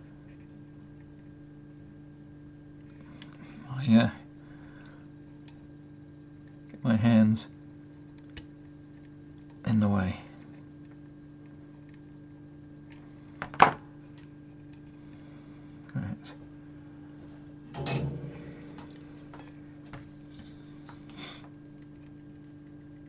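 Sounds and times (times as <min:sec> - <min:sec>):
small ticks: 0:00.0 - 0:01.4, 0:04.8 - 0:05.7, 0:07.9 - 0:09.6, 0:10.4 - 0:13.1, 0:14.1 - 0:15.2, 0:20.3 - 0:23.0
steady low hum: 0:00.0 - 0:23.0
objects clattering: 0:17.7 - 0:20.1.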